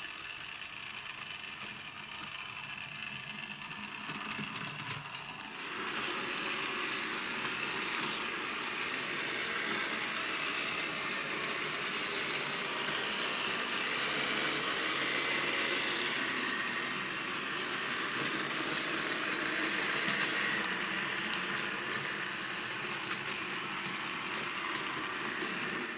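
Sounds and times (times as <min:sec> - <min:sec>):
model tram motor whirring: 0:00.0 - 0:25.9
wheels on rails: 0:00.0 - 0:25.9.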